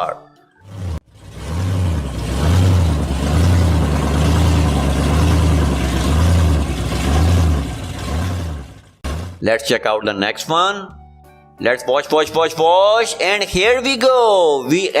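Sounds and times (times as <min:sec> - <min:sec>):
car engine rumbling and revving: 0:00.6 - 0:09.5.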